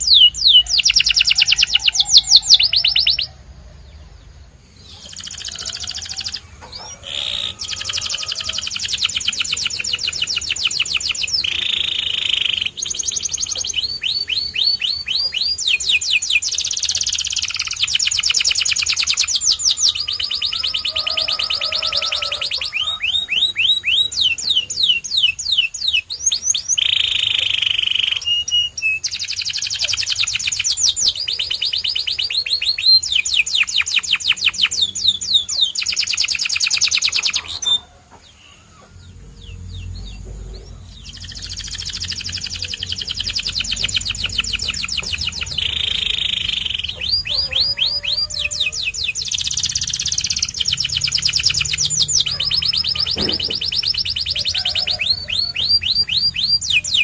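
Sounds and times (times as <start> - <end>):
canary singing trills: 0.0 - 57.0.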